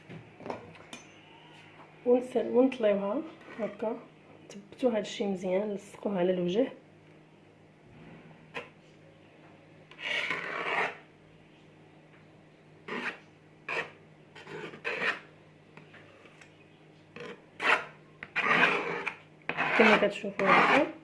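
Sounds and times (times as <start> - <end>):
spatula scraping cream: 3.4 - 4.0, 9.9 - 11.0, 12.8 - 16.4, 17.1 - 21.0.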